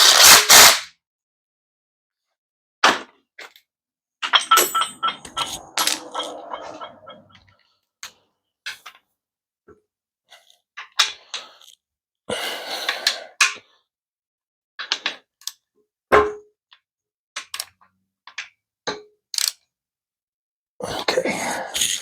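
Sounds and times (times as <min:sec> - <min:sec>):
metal tools clanking: 0:04.2 - 0:07.4
ringing metal clank: 0:04.3 - 0:07.4
metal scrape: 0:04.4 - 0:07.5.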